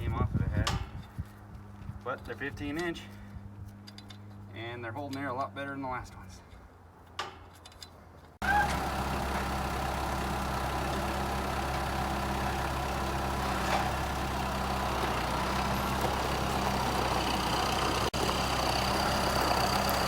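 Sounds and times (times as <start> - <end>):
engine idling: 8.4 - 20.0.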